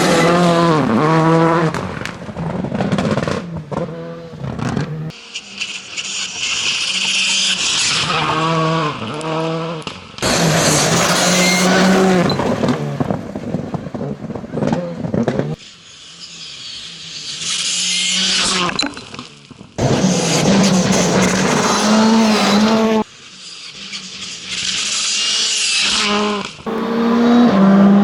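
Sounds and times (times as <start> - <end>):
rally car engine revving: 0.0 - 5.1, 6.6 - 13.3, 19.8 - 23.1, 25.6 - 28.0
tyres on gravel: 18.3 - 22.6.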